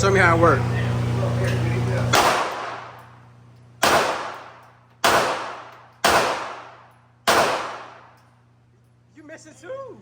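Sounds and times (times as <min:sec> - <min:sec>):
gunshots: 0:02.1 - 0:03.0, 0:03.8 - 0:08.1.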